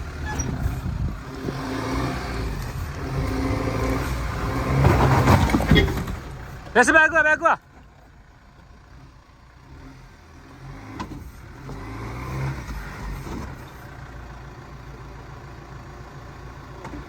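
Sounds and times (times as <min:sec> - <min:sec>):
off-road vehicle engine revving: 0:00.0 - 0:07.3, 0:08.6 - 0:14.8.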